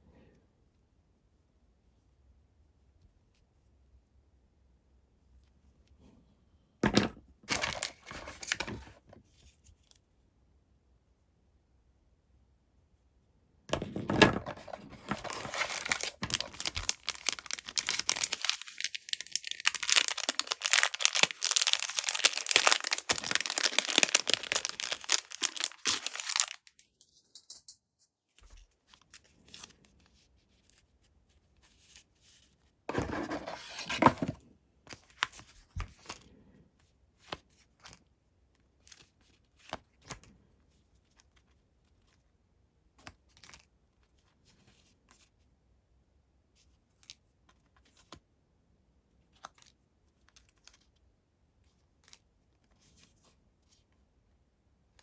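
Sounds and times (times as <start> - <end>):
packaging torn and crinkled: 7.5 - 8.8, 14.4 - 26.8.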